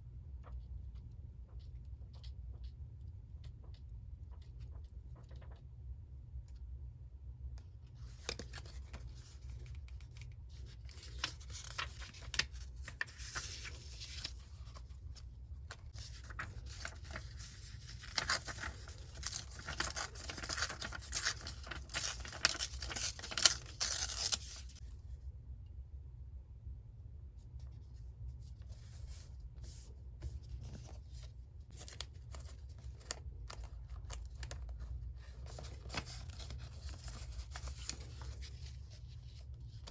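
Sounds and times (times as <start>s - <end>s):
steady low hum: 0.0s - 39.9s
paper taps and rustles: 8.1s - 24.8s, 28.8s - 39.9s.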